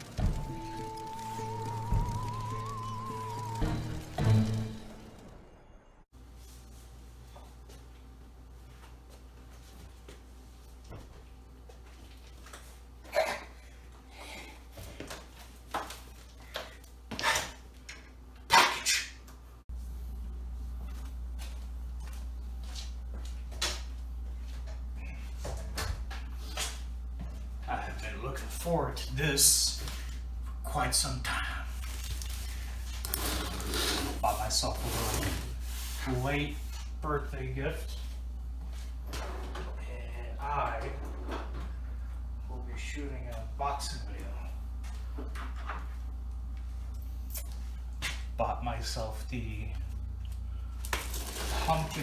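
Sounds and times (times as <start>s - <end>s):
low sustained drone notes: 0.0s - 6.1s
steady low hum: 19.7s - 33.3s, 35.4s - 51.0s.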